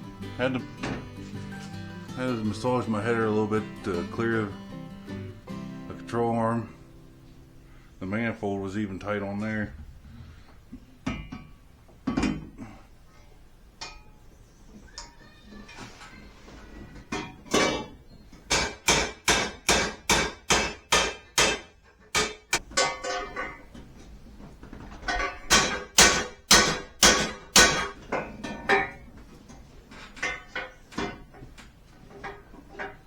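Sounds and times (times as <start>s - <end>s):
hammer beating on metal: 18.5s - 23.1s, 25.5s - 28.0s.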